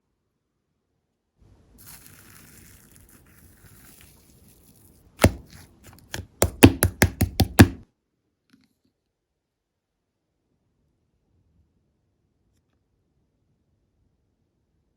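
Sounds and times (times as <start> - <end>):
slime popping and clicking: 5.2 - 7.8
slime rustling: 5.2 - 7.8.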